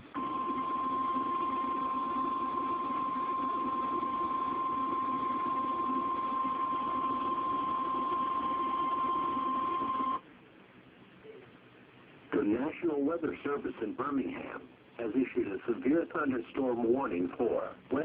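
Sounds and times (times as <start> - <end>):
low background hiss: 10.2 - 18.0.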